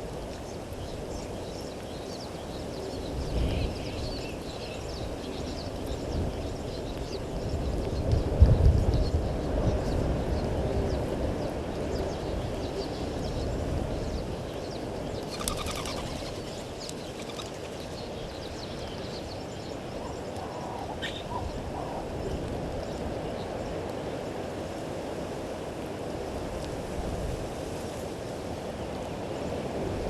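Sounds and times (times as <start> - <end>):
outdoor background hiss: 0.0 - 30.0
birds calling: 14.2 - 23.6.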